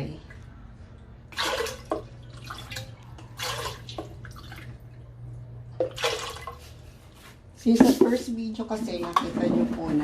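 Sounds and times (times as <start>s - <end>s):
water splashing into metal pot: 1.3s - 4.8s.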